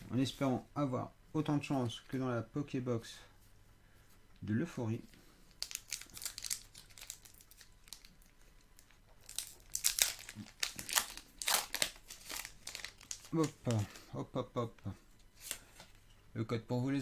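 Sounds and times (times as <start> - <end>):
foil wrapper crinkling and tearing: 5.4 - 13.9.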